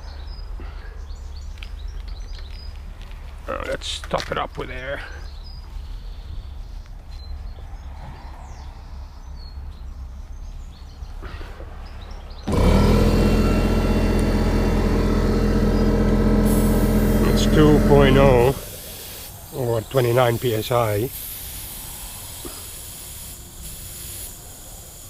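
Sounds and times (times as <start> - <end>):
air compressor running: 12.5 - 19.6.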